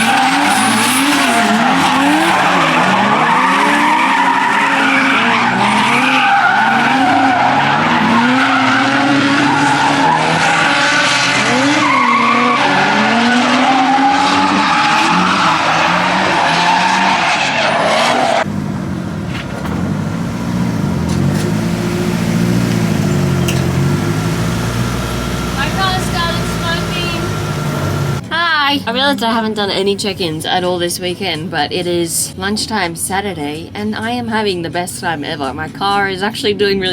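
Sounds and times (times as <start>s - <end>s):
car engine revving: 0.0s - 28.3s
tyres skidding and squealing: 0.0s - 28.3s.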